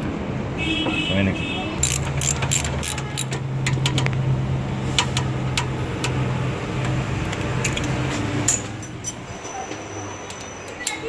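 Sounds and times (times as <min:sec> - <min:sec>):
hand tools clicking and tapping: 0:01.8 - 0:04.2, 0:05.0 - 0:06.2, 0:06.8 - 0:09.2.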